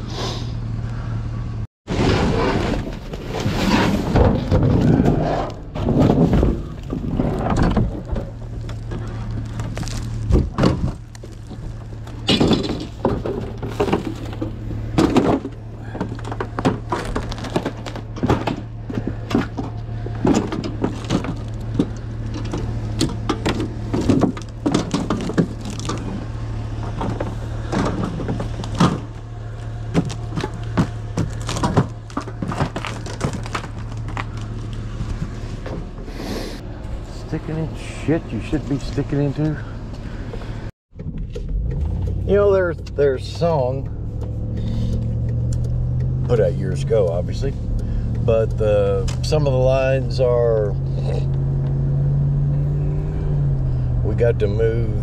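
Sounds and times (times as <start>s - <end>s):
scrap metal clanking: 1.9s - 39.9s.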